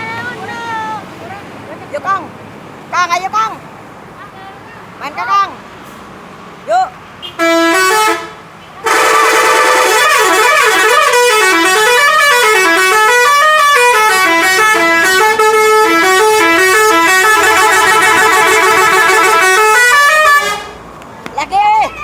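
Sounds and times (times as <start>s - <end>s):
multi-tone bus horn melody: 7.2s - 20.8s.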